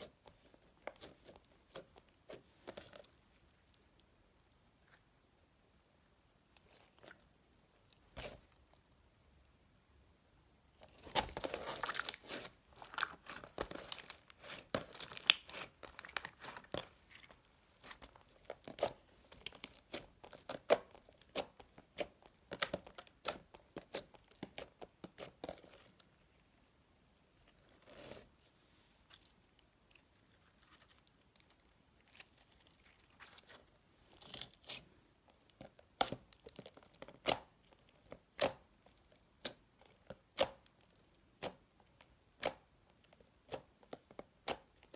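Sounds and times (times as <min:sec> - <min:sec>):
slime crackling and popping: 0:10.8 - 0:26.1.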